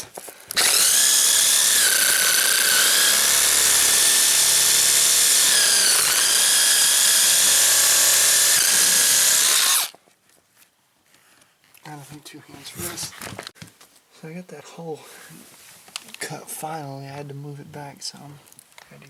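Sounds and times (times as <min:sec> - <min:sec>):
power drill with hole saw whining: 0:00.0 - 0:10.0.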